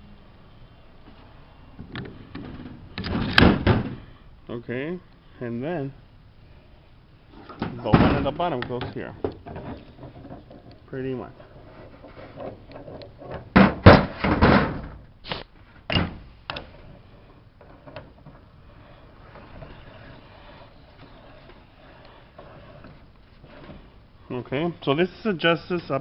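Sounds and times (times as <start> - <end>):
knocks and clatter of metal parts: 7.4 - 15.0.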